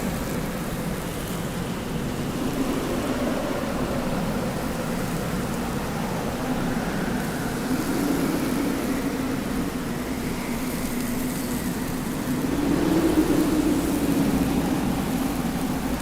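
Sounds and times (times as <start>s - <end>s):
wind blowing: 12.0s - 16.0s.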